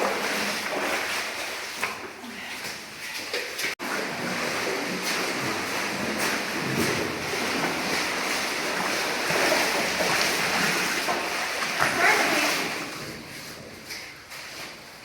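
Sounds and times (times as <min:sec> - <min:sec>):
water rushing and splashing: 0:00.0 - 0:13.7.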